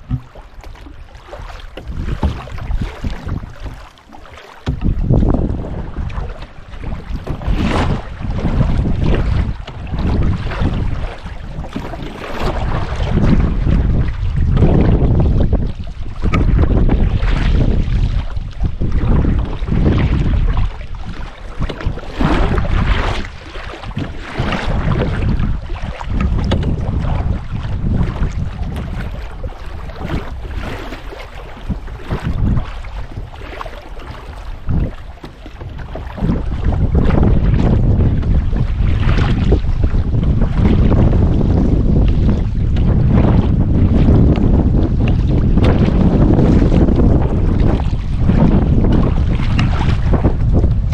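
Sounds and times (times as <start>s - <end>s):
paddle splashing water: 0.0s - 50.9s
wind rumble on microphone: 0.0s - 50.9s.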